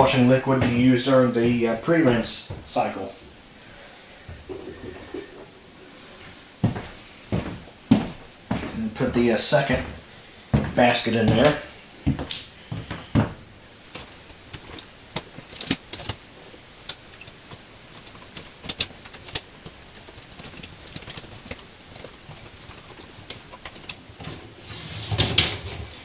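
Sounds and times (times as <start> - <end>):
dishes clinking: 4.5 - 5.5.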